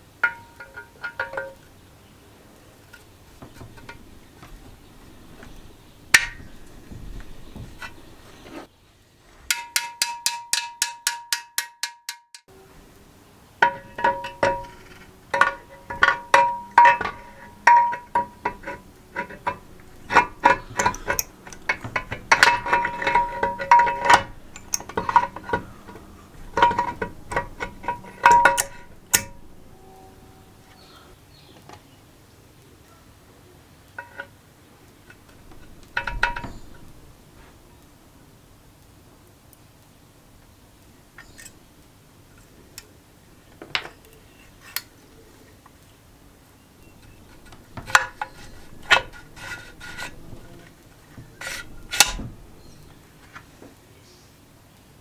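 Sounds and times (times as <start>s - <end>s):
metal tapping on metal: 0.1s - 1.8s, 2.9s - 8.6s, 9.5s - 12.6s, 13.6s - 30.9s, 34.0s - 34.3s, 35.1s - 37.2s, 46.8s - 53.0s.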